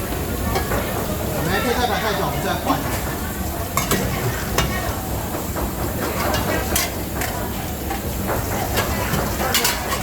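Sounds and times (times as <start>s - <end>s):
faint voices: 0.0s - 10.0s
dishes and utensils clinking: 3.8s - 4.9s, 5.6s - 10.0s.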